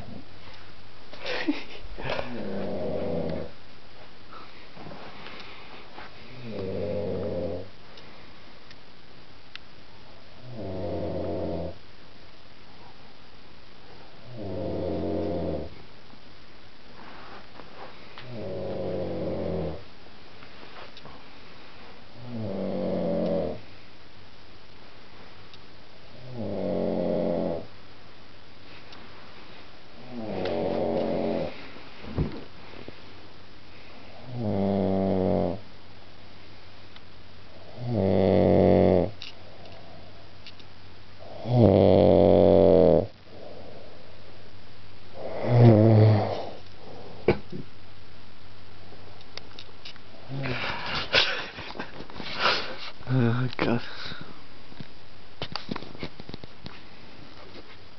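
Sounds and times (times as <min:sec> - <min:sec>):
man snoring: 0:02.1 - 0:03.5, 0:06.3 - 0:07.7, 0:10.4 - 0:11.8, 0:14.2 - 0:15.8, 0:18.3 - 0:19.8, 0:22.2 - 0:23.6, 0:26.2 - 0:27.7, 0:30.0 - 0:31.6, 0:34.2 - 0:35.6, 0:37.7 - 0:39.2, 0:41.2 - 0:43.9, 0:45.2 - 0:46.6.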